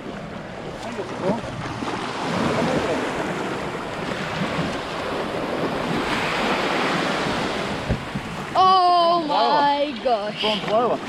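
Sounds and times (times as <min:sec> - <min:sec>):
surf washing onto shore: 0:00.0 - 0:11.0
wind on microphone: 0:01.2 - 0:08.6.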